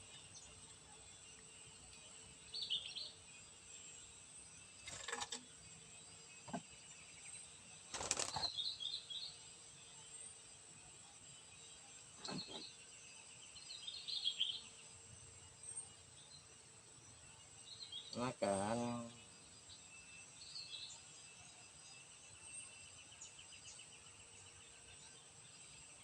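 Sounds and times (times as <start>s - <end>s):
bird wings flapping: 7.9s - 8.5s.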